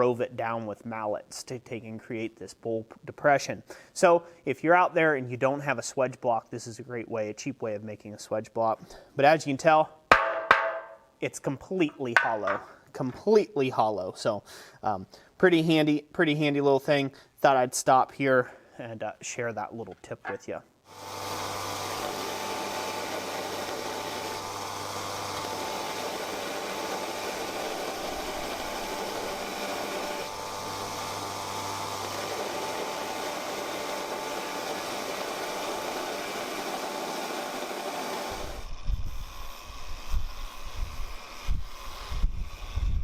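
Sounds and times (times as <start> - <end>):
fan or blower running: 20.9 - 43.0
wind buffeting on microphone: 38.7 - 43.0.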